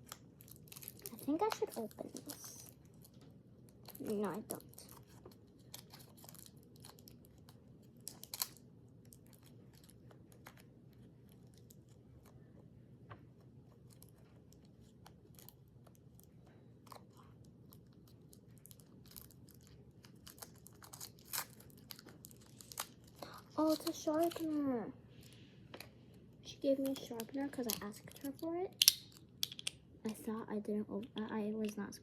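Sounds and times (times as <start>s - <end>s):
packaging rustling: 0.0s - 3.2s, 3.8s - 12.3s
clicks of objects handled: 27.7s - 29.8s.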